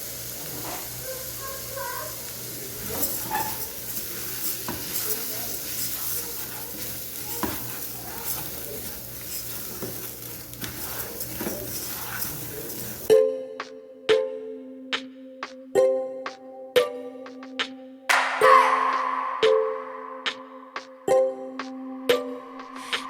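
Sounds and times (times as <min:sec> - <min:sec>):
rice sizzling in a pan: 0:00.0 - 0:13.1
spoon scraping a pan: 0:02.8 - 0:13.1
chiming musical tone: 0:18.4 - 0:22.6.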